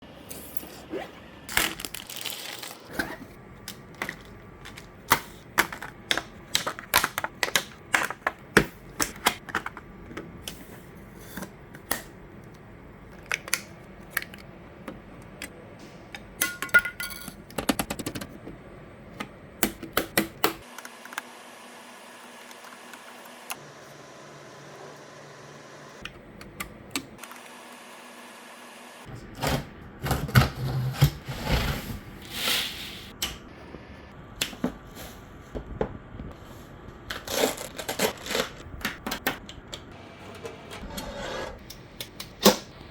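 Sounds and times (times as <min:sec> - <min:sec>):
computer parts clicking and knocking: 0:16.1 - 0:20.7.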